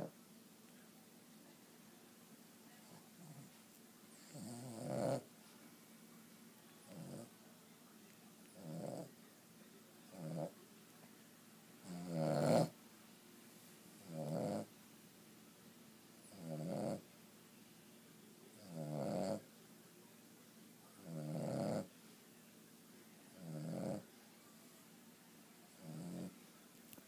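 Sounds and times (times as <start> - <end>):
dog snoring: 4.2 - 5.3, 6.8 - 7.3, 8.5 - 9.1, 10.1 - 10.6, 11.8 - 12.8, 14.0 - 14.7, 16.2 - 17.1, 18.6 - 19.4, 21.0 - 21.9, 23.3 - 24.1, 25.7 - 26.4.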